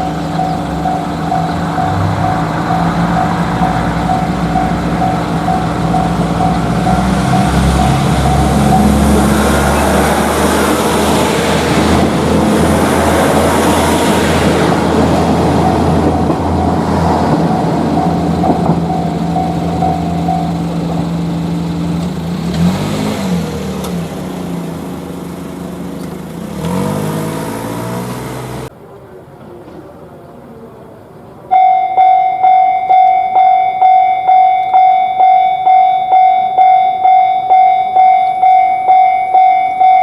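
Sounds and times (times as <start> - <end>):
train passing close by: 0.0 - 28.8
train drive whine: 0.0 - 40.0.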